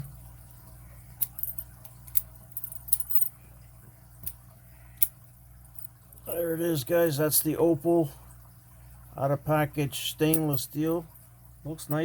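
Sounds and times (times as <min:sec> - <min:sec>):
faint steady hum: 0:00.0 - 0:12.0
keys clinking and jangling: 0:01.2 - 0:03.4.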